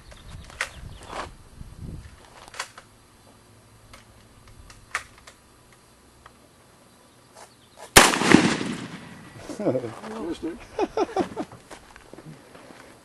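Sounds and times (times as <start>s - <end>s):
faint rifle clicks: 3.9s - 6.4s
loud rifle shot: 8.0s - 9.4s.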